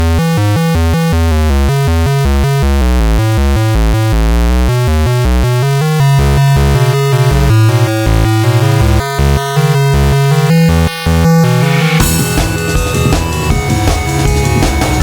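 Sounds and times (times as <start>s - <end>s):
heavy bass line: 0.0s - 15.0s
synthesized alarm tune: 10.5s - 15.0s.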